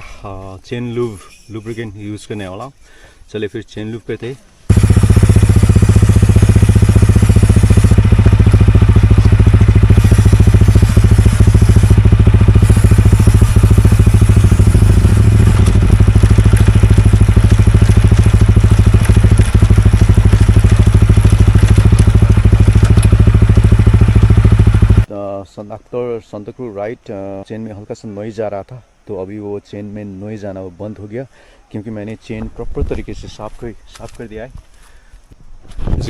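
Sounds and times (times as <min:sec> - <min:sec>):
motorcycle engine running: 0:04.7 - 0:25.1.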